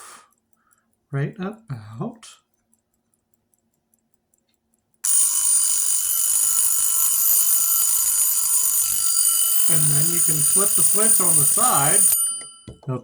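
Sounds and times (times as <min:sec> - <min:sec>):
clock ticking faintly: 0:00.2 - 0:01.7, 0:02.4 - 0:13.0
alarm clock ringing: 0:05.0 - 0:13.0.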